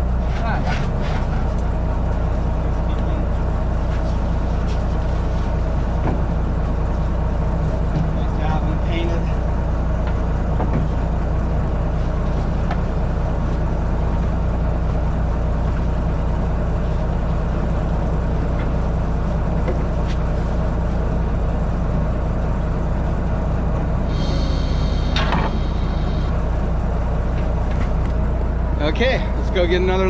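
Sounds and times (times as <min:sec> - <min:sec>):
engine humming: 0:00.0 - 0:30.0
high-pitched squeal: 0:24.0 - 0:26.5.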